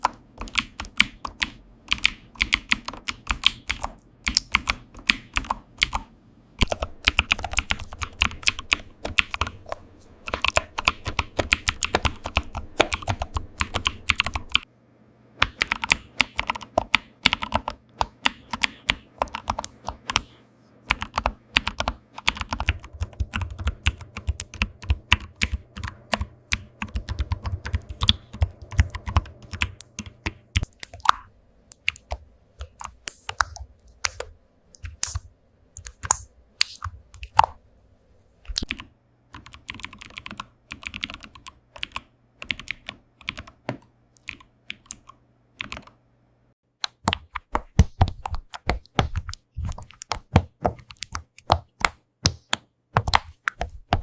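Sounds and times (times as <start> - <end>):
fast typing on keyboard: 0.0 - 14.7, 15.4 - 20.3, 20.9 - 35.2, 38.5 - 46.0, 46.8 - 54.0.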